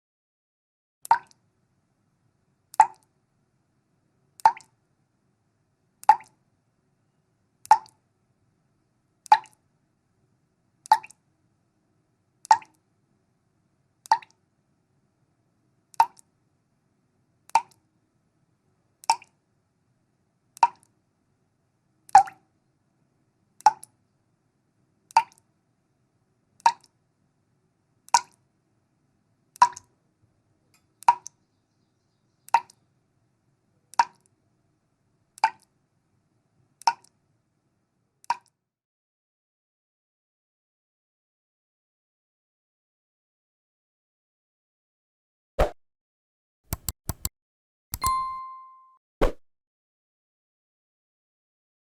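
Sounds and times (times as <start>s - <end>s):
water drops plopping into water: 1.0s - 1.4s, 4.4s - 4.7s, 6.0s - 6.3s, 7.6s - 8.0s, 10.9s - 11.2s, 12.5s - 12.8s, 14.0s - 14.4s, 35.4s - 35.7s.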